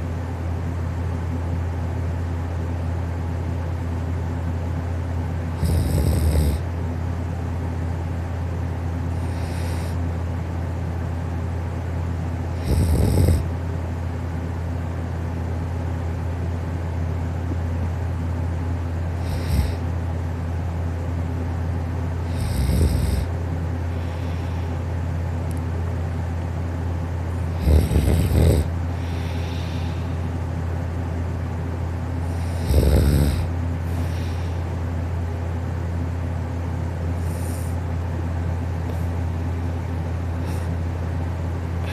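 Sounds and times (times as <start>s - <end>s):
steady low hum: 0.0s - 41.9s
person snoring softly: 5.5s - 6.7s, 9.1s - 10.1s, 12.5s - 13.5s, 19.2s - 19.9s, 22.2s - 24.7s, 27.4s - 30.2s, 32.2s - 34.7s, 37.2s - 37.8s, 40.4s - 40.8s.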